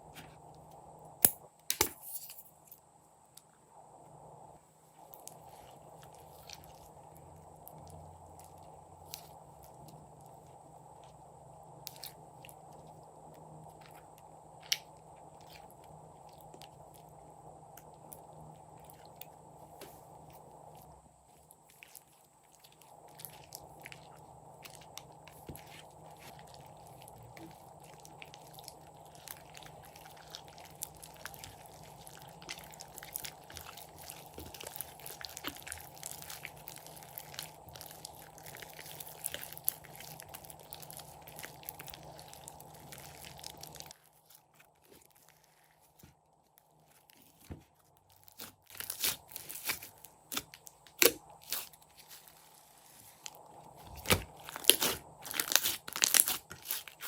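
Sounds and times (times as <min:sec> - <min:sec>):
slime crackling: 0:20.6 - 0:57.0.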